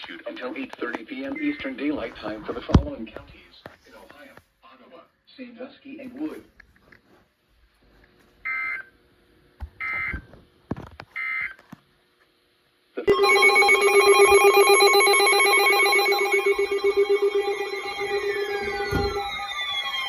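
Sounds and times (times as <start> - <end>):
loud trilling alert tone: 13.1 - 20.0.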